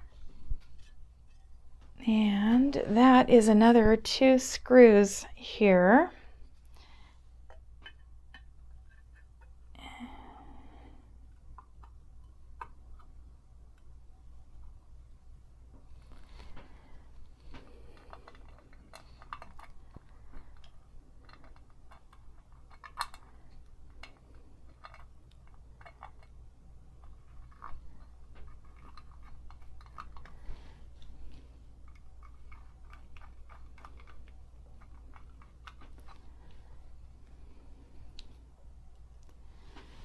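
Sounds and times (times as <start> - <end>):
small metal parts clicking: 17.9 - 26.4, 31.8 - 36.3.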